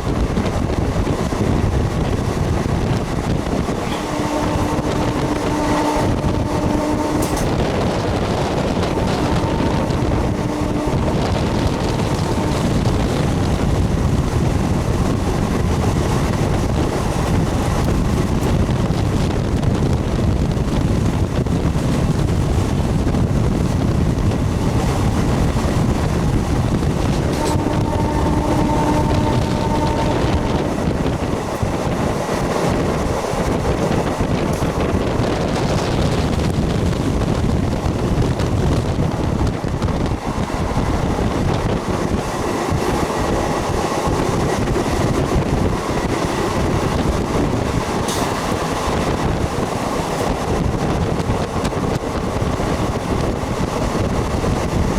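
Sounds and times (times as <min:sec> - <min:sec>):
train wheels rumbling: 0:00.0 - 0:54.9
wind noise: 0:00.0 - 0:54.9.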